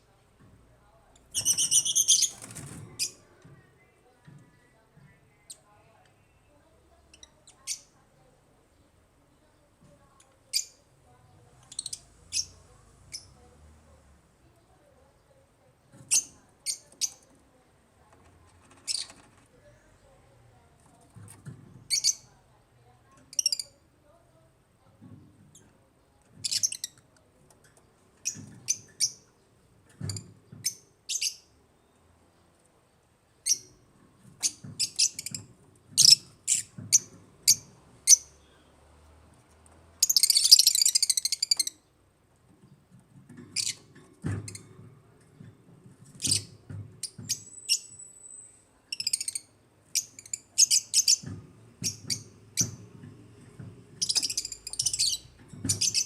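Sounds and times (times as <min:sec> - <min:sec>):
lovebirds chirping: 0:01.1 - 0:08.9, 0:40.0 - 0:41.8, 0:46.2 - 0:52.8, 0:54.0 - 0:56.0.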